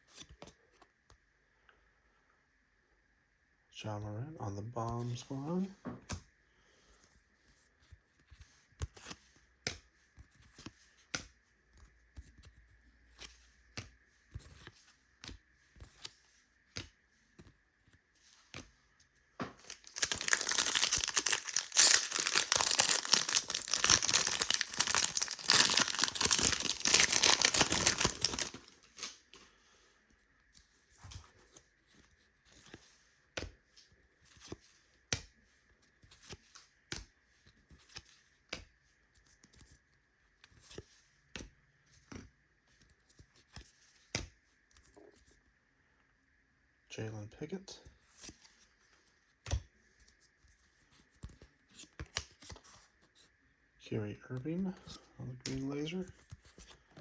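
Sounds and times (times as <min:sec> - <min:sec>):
wrapper tearing and crinkling: 0:19.6 - 0:29.2.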